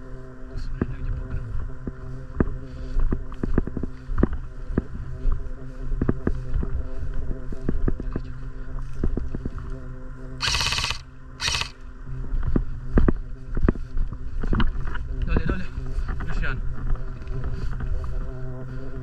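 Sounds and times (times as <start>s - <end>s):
steady low hum: 0.0s - 15.1s
short hissing bursts: 10.4s - 11.7s.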